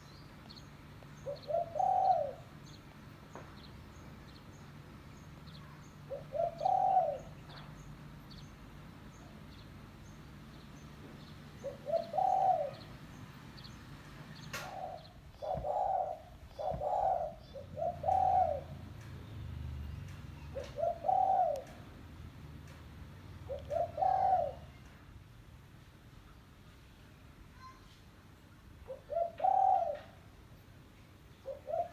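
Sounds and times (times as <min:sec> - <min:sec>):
dove cooing: 0:01.1 - 0:02.8, 0:05.4 - 0:07.9, 0:10.8 - 0:19.0, 0:20.3 - 0:22.0, 0:23.4 - 0:24.8, 0:28.9 - 0:30.2, 0:31.4 - 0:31.9.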